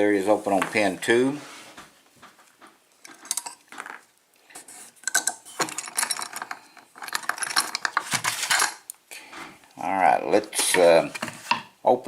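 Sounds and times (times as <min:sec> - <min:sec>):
lock and picks clicking: 0:05.0 - 0:09.0.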